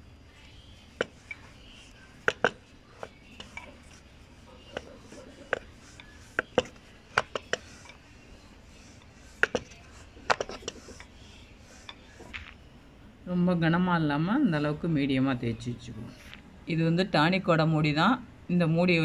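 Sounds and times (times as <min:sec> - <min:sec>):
rolling pin clicking on board: 0:02.2 - 0:03.2.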